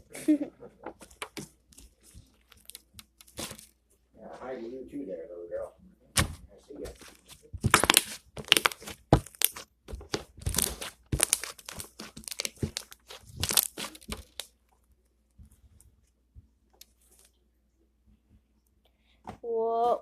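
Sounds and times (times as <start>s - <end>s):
slime being squished by hand: 1.0s - 3.8s, 6.2s - 14.9s.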